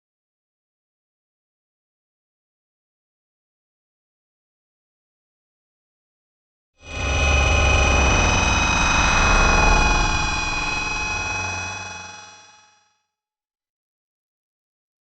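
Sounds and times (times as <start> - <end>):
machinery high whines: 6.8 - 12.6
factory machinery rumble: 6.9 - 12.3.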